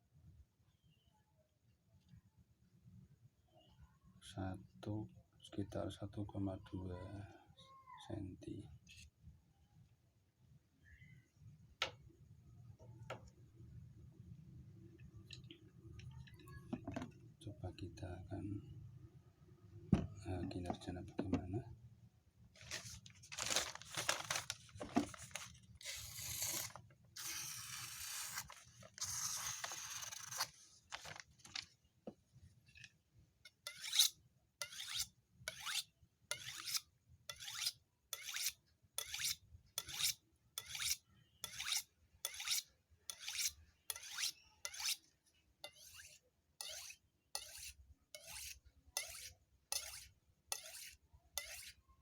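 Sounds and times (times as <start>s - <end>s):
knife scraping on sharpening steel: 25.8s - 30.5s, 33.5s - 51.8s.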